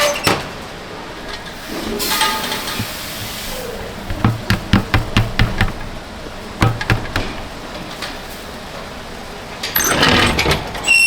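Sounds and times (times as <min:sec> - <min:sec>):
sharp knocks: 0:04.0 - 0:07.9.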